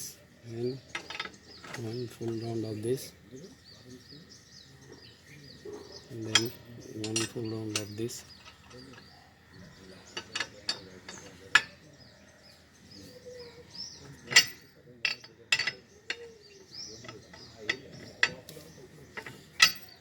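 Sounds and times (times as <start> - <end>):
faint birds chirping: 0.0 - 20.0
metal spanner clinking on wheel nuts: 0.9 - 2.8, 6.1 - 9.2, 10.1 - 11.8, 14.1 - 20.0.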